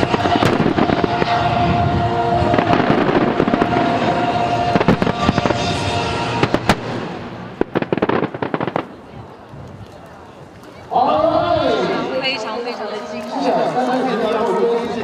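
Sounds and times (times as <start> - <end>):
fireworks bangs: 0.0 - 9.6
fireworks crackling pops: 6.4 - 10.8.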